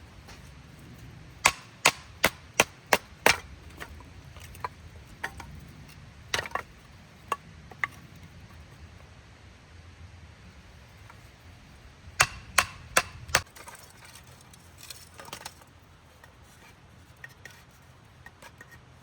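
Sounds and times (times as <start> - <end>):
dry wood cracking: 0.0 - 8.0.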